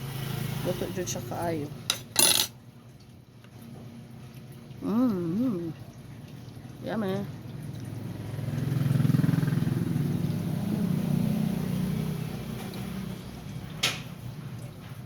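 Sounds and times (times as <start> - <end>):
vehicle engine passing by: 7.8 - 13.7.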